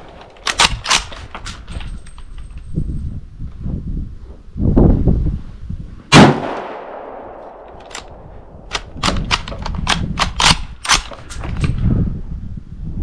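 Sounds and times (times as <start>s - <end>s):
rifle bolt clicks: 0.2s - 2.3s, 7.4s - 11.8s
rifle shot with echo: 6.1s - 9.2s.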